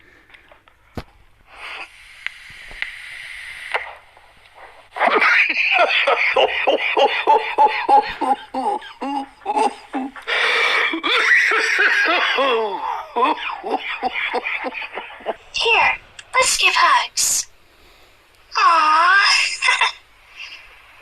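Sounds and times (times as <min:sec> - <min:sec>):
man coughing and laughing: 0:05.0 - 0:15.4.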